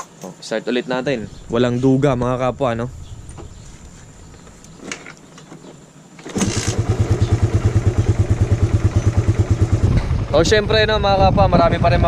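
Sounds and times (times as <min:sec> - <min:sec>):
motorcycle engine starting and idling: 0:06.2 - 0:11.2.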